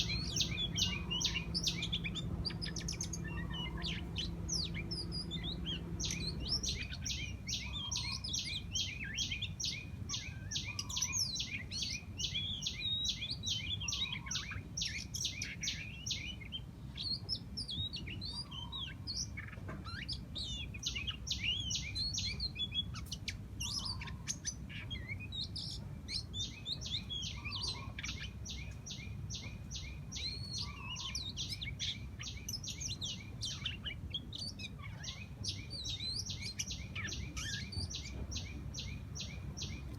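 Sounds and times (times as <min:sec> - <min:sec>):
steady low rumble: 0:00.0 - 0:10.7
birds chirping and calling: 0:00.0 - 0:39.9.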